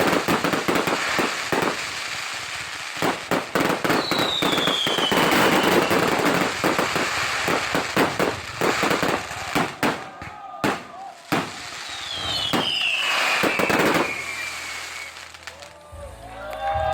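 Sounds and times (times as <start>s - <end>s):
fireworks crackling and banging: 0.0s - 15.9s
whistling firework falling in pitch: 3.8s - 6.4s, 9.6s - 15.4s.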